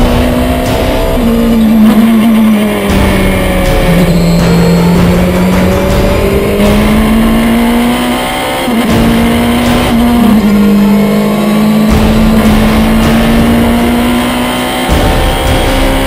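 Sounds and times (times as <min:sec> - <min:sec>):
race car engine revving: 0:00.0 - 0:16.0.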